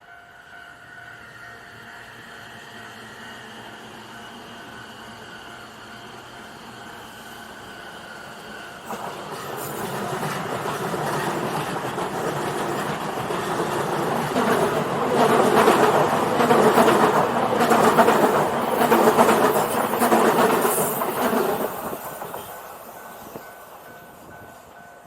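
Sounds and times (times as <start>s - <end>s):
train wheels clattering on track: 8.4s - 24.8s.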